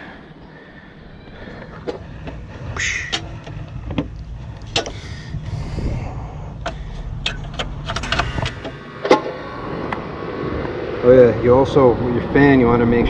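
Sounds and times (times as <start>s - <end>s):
condenser fan humming: 0.0s - 13.0s
clicks and knocks: 6.6s - 9.4s.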